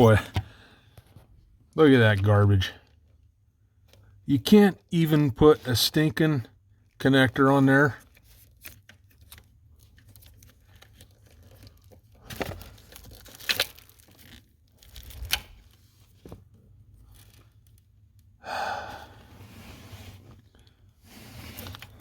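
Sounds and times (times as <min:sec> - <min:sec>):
wire clicks and rustles: 0:08.0 - 0:18.4, 0:21.5 - 0:22.0.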